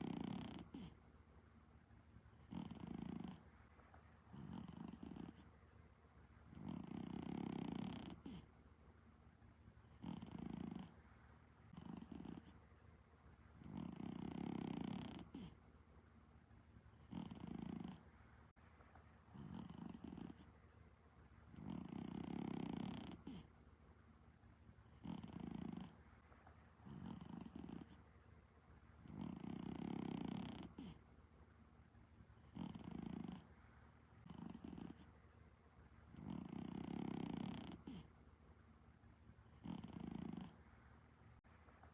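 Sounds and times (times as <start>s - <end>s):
cat snoring faintly: 0.0s - 1.3s, 2.3s - 8.8s, 9.8s - 12.8s, 13.5s - 15.8s, 16.9s - 20.7s, 21.4s - 23.7s, 24.8s - 28.3s, 29.0s - 31.2s, 32.4s - 35.2s, 36.1s - 38.3s, 39.4s - 41.9s.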